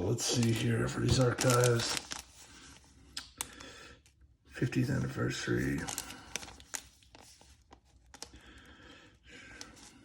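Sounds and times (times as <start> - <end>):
cards rustling: 0.2 - 3.6.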